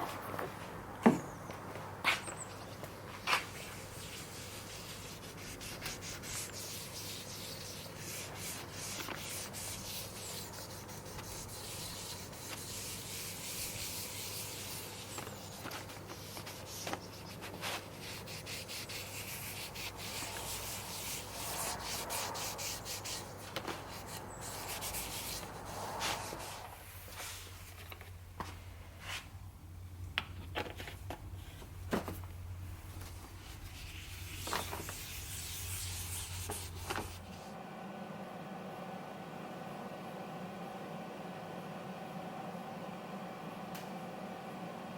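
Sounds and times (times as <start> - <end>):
steady low hum: 0.0 - 30.2, 31.2 - 44.9
sandpaper scratching on wood: 3.5 - 26.6, 33.7 - 37.4.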